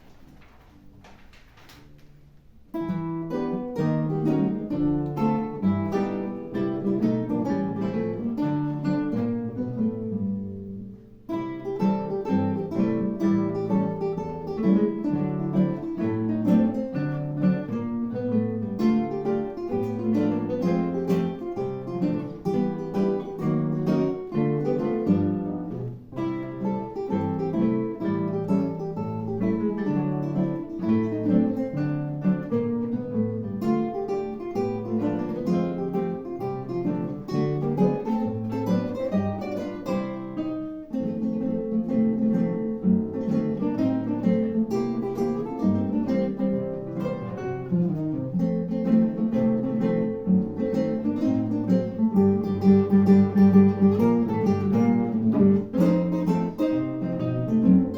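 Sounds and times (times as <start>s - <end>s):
classical guitar playing: 0.0s - 57.9s.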